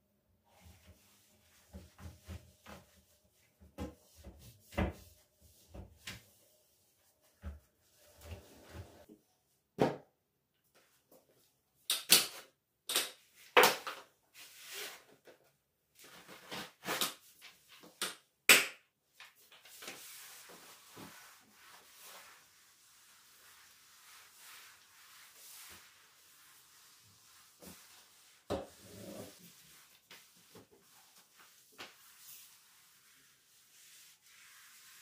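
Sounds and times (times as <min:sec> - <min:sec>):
soft hiss of rubbing or spraying: 0:19.7 - 0:35.0.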